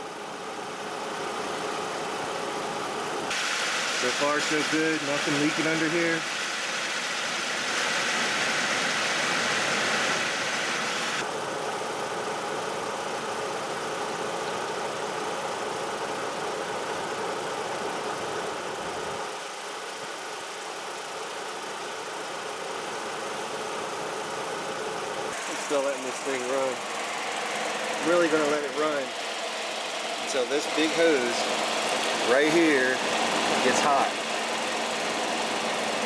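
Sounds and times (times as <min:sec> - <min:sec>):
car engine idling: 0:00.0 - 0:36.0
bright hiss: 0:03.3 - 0:11.2.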